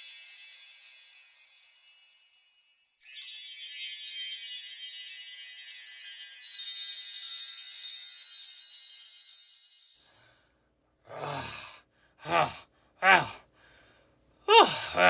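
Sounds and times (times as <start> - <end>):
tinkling chime-like music: 0.0 - 10.3.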